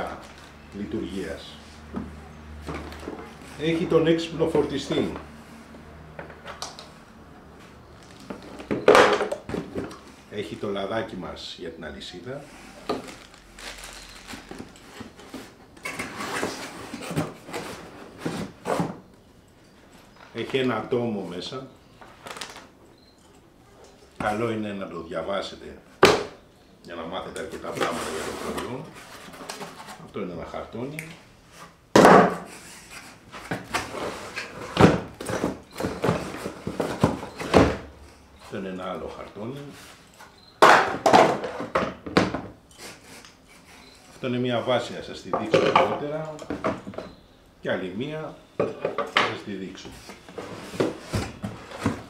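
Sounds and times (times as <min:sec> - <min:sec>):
items being set down: 0:08.0 - 0:10.1, 0:33.3 - 0:37.9, 0:40.2 - 0:42.6, 0:45.3 - 0:47.2, 0:50.0 - 0:52.0
cardboard packaging scraping: 0:12.4 - 0:19.1, 0:27.6 - 0:30.0, 0:32.4 - 0:37.5, 0:42.8 - 0:44.2, 0:50.0 - 0:52.0
packaging rustling: 0:12.5 - 0:18.6.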